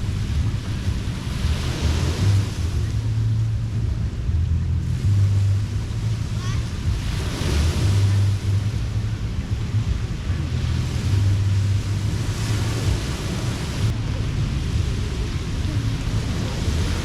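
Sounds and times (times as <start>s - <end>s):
waves washing on a beach: 0.0s - 17.0s
wind rumble on microphone: 0.0s - 17.0s.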